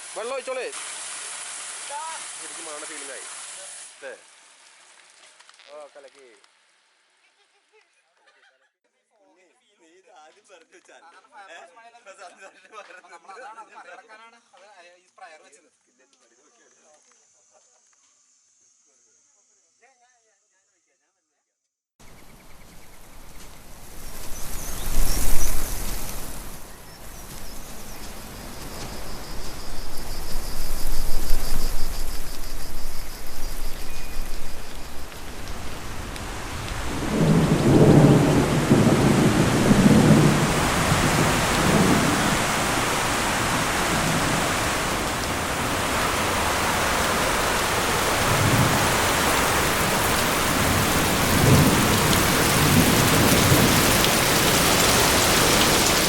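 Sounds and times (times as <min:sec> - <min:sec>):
heavy rain: 0:00.0 - 0:07.2, 0:22.4 - 0:56.0
thunder rumbling: 0:23.0 - 0:56.0
thunder crack: 0:28.2 - 0:56.0.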